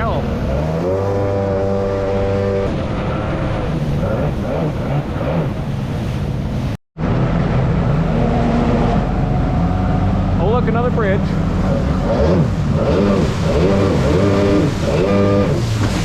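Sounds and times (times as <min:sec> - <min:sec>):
jet ski engine running: 0:00.0 - 0:16.0
water rushing: 0:00.0 - 0:16.0.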